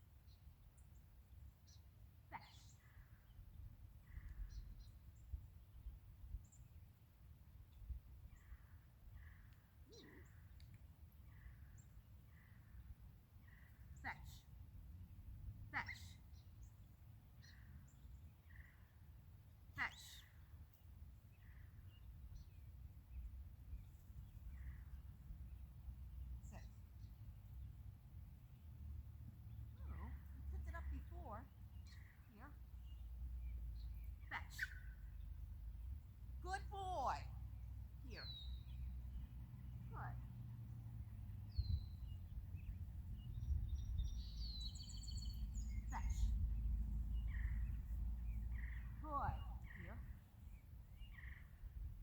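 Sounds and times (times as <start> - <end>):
birds chirping: 0.1 - 52.0
low steady rumble: 39.1 - 52.0.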